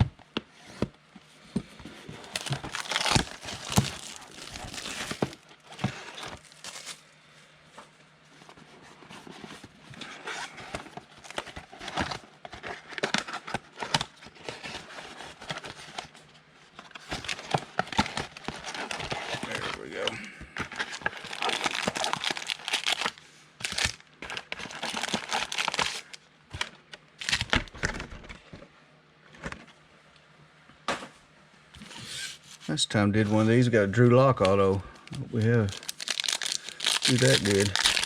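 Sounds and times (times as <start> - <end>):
card pack wrapper tearing and crinkling: 2.2 - 7.0, 17.2 - 20.1, 20.8 - 26.2, 27.2 - 27.8, 35.5 - 38.0.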